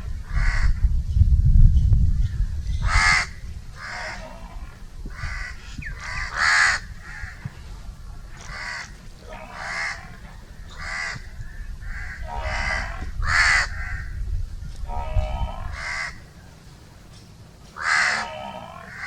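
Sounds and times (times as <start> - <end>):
crow cawing: 0.3 - 0.8, 5.1 - 7.5, 8.4 - 8.9, 9.5 - 10.1, 10.8 - 14.1, 15.1 - 16.2, 17.8 - 19.0.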